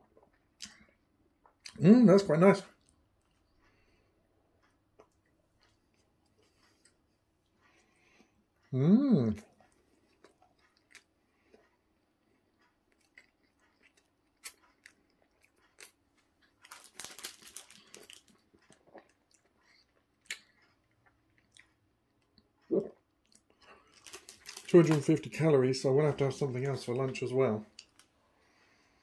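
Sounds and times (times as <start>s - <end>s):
chewing crunches: 9.6s - 22.4s, 23.2s - 25.3s.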